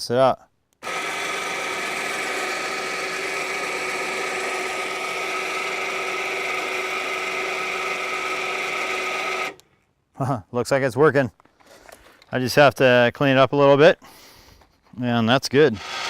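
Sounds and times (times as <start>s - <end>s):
electric winch whining: 0.8s - 9.6s.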